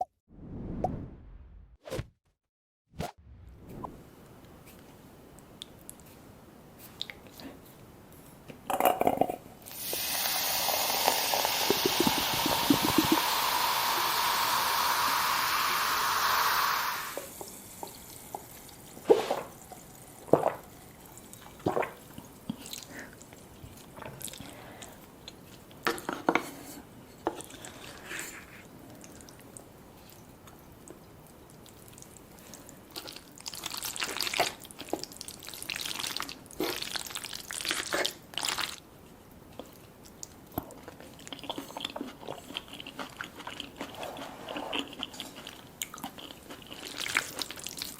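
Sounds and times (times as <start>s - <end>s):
wet sloppy eating sounds: 11.1s - 14.3s, 28.9s - 38.8s, 39.6s - 47.9s.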